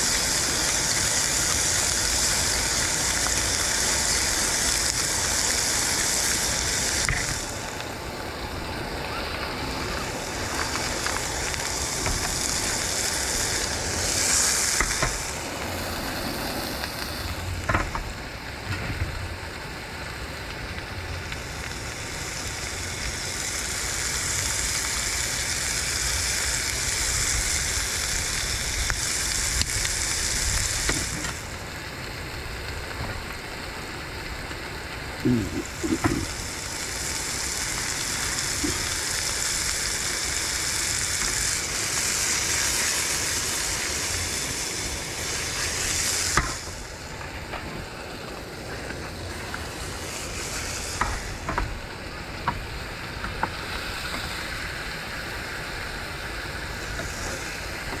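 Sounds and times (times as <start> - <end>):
food sizzling in a pan: 0.0 - 58.0.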